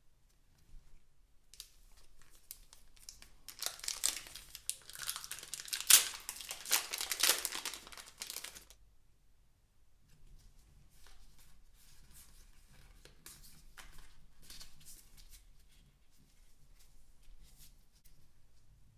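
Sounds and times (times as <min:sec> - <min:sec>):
packaging crinkling and ripping: 0:01.6 - 0:08.8.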